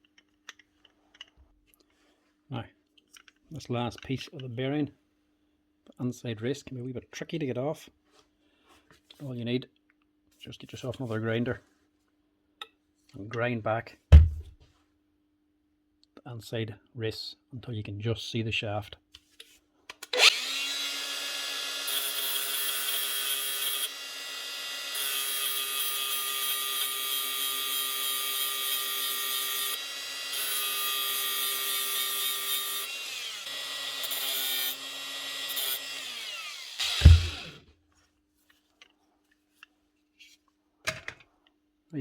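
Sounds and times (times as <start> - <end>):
loud knock: 14.1 - 14.5, 36.8 - 37.4
grinder grinding metal: 20.2 - 37.6.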